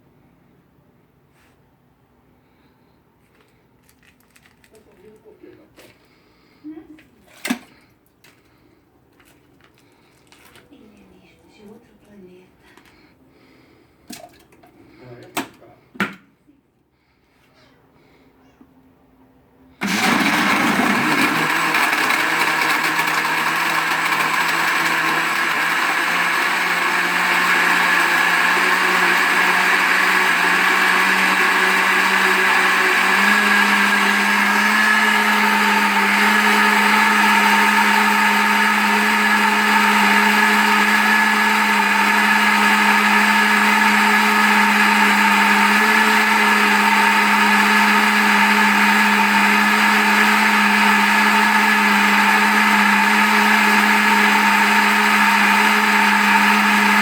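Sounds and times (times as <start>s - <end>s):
blender motor running: 19.8s - 57.0s.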